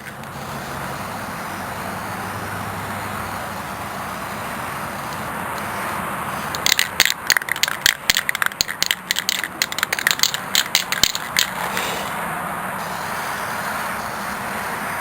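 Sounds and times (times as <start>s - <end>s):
spray can hissing: 0.0s - 12.2s, 12.8s - 15.0s
mixing ball rattling in can: 6.5s - 12.0s.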